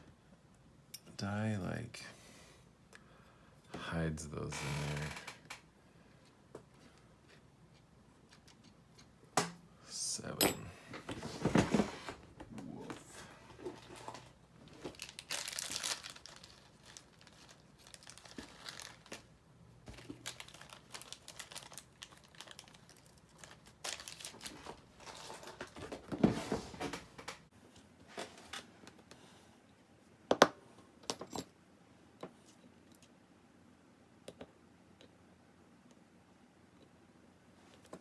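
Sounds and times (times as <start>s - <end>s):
hands rustling small parts: 13.0s - 19.3s, 19.9s - 26.0s.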